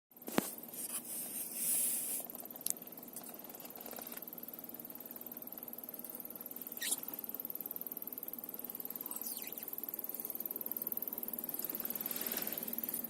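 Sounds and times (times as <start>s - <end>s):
short hiss: 0.8s - 2.3s
blower motor rhythmic squeak: 3.3s - 13.0s.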